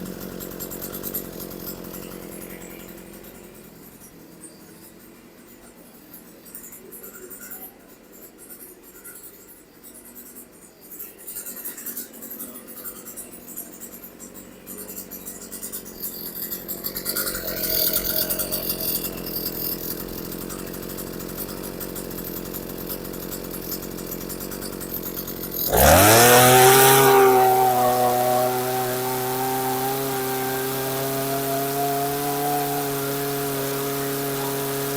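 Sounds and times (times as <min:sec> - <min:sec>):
two-stroke engine running: 0:00.0 - 0:05.5, 0:13.5 - 0:34.9.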